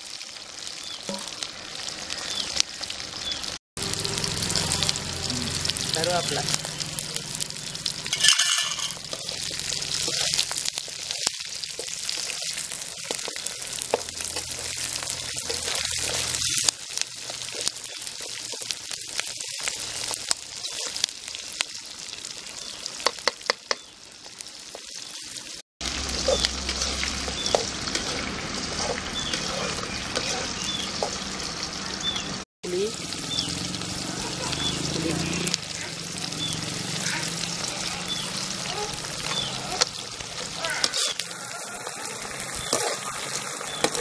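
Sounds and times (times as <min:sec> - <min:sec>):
leaves sizzling in hot oil: 0:00.0 - 0:44.0.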